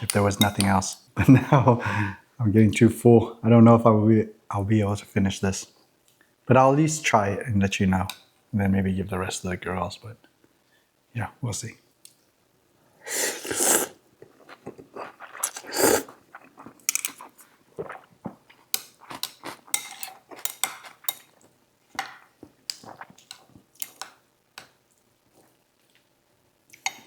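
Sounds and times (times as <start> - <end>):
utensils clinking against dishes: 0.0 - 1.0, 19.7 - 20.9
chewing and mouth sounds: 14.2 - 21.6, 22.3 - 24.0.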